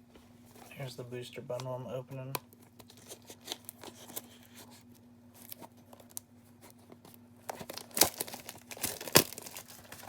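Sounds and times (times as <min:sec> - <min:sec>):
plastic and cardboard crinkling: 0:02.6 - 0:10.0.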